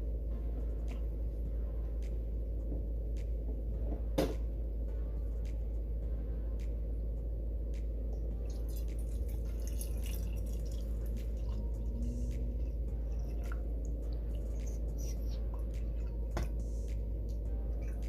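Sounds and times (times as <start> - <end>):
steady low hum: 0.0 - 18.0
coffee dripping into a cup: 8.2 - 12.1.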